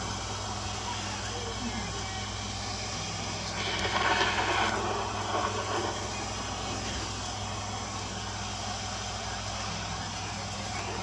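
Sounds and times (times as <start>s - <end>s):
rain hissing: 0.0s - 11.0s.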